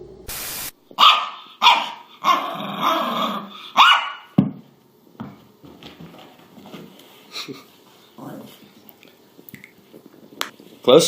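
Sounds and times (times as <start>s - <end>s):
burst of hiss: 0.3s - 0.8s
dog barking: 1.0s - 4.4s.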